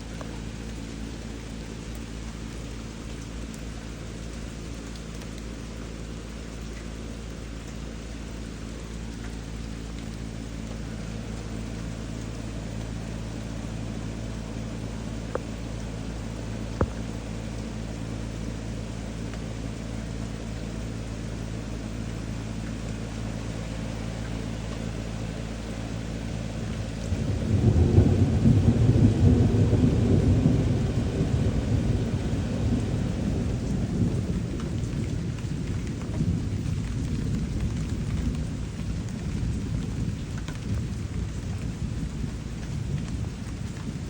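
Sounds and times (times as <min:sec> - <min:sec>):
low steady hum: 0:00.0 - 0:44.0
steady rain: 0:00.0 - 0:44.0
thunder rumbling: 0:26.5 - 0:44.0.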